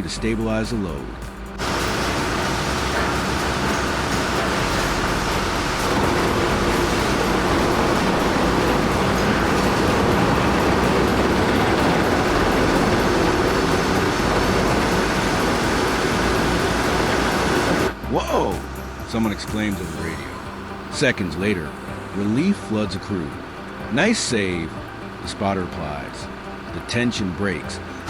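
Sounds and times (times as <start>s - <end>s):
heavy engine rumble: 0.7s - 18.0s.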